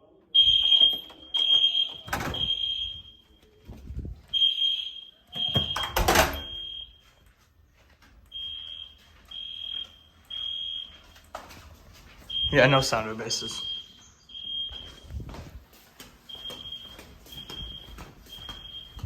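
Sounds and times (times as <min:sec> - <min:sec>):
fire alarm horn blasts: 0:00.4 - 0:03.4, 0:04.3 - 0:07.2, 0:08.3 - 0:11.2, 0:12.3 - 0:15.2, 0:16.3 - 0:19.0.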